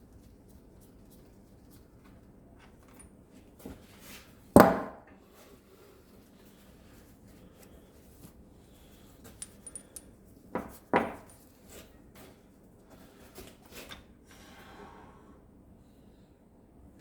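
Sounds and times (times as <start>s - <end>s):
metal tools clinking and clanking: 9.3s - 10.1s.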